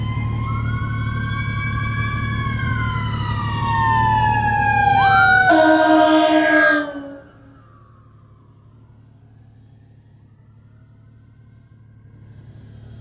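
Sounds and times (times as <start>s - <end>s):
fire engine sirens wailing: 0.0s - 12.2s
loud horn blast: 5.1s - 7.7s.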